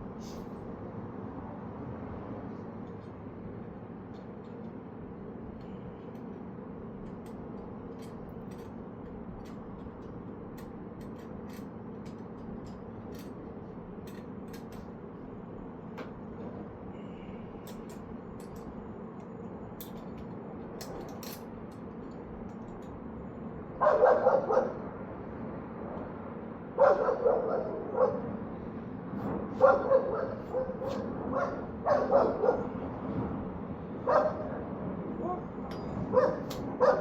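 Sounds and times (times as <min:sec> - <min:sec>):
steady low hum: 0:00.0 - 0:37.0
dog barking: 0:23.8 - 0:24.8, 0:26.8 - 0:28.3, 0:29.6 - 0:32.7, 0:34.1 - 0:34.6, 0:36.1 - 0:37.0.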